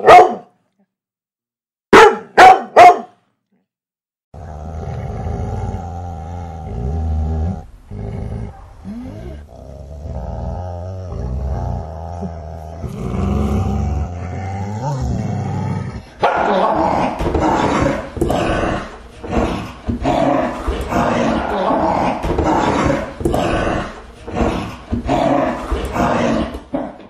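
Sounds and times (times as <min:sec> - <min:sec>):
dog barking: 0:00.0 - 0:00.6, 0:01.9 - 0:03.2, 0:08.5 - 0:08.8, 0:16.2 - 0:16.8
dog growling: 0:04.4 - 0:27.0.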